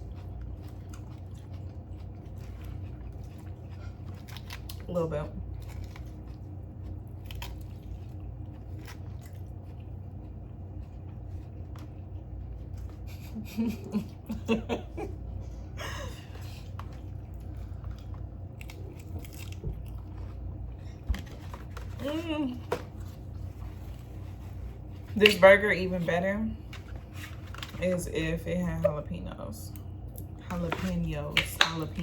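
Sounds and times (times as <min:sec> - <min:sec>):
person chewing food: 0:00.0 - 0:14.4, 0:15.0 - 0:22.0
low hum: 0:00.0 - 0:32.0.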